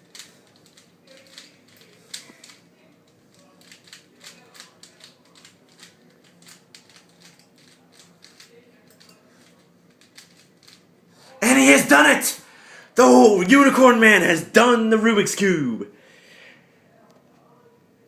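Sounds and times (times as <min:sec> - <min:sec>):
plastic puzzle cube clicking: 0:03.3 - 0:10.8.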